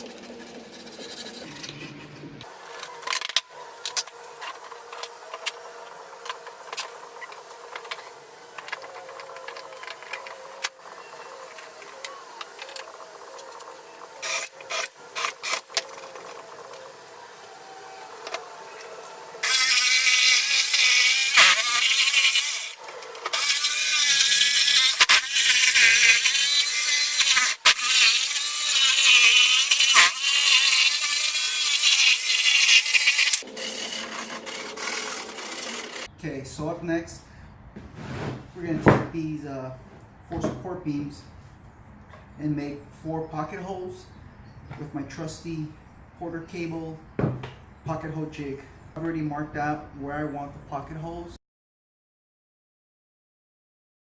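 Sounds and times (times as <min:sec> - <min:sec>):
power tool running: 0:01.4 - 0:36.1.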